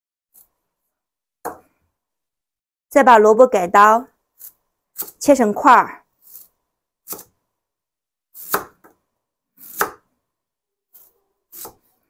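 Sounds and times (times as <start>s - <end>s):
knife chopping radish: 4.4s - 5.3s, 6.2s - 7.4s, 8.4s - 9.0s, 9.6s - 10.1s, 10.9s - 12.0s.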